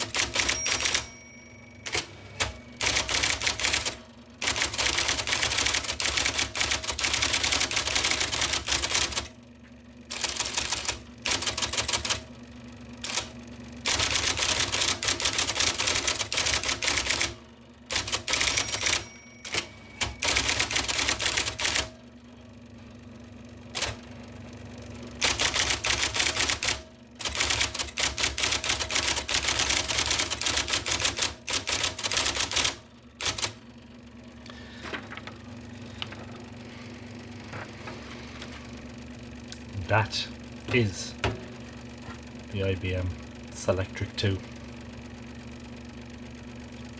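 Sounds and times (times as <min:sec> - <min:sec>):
electric typewriter keystrokes: 0:00.0 - 0:09.4, 0:10.1 - 0:12.3, 0:13.0 - 0:22.0, 0:23.7 - 0:24.1, 0:25.2 - 0:33.6
typewriter motor humming: 0:00.0 - 0:09.4, 0:10.1 - 0:12.4, 0:13.0 - 0:22.0, 0:23.7 - 0:24.1, 0:25.1 - 0:33.6, 0:34.4 - 0:37.3.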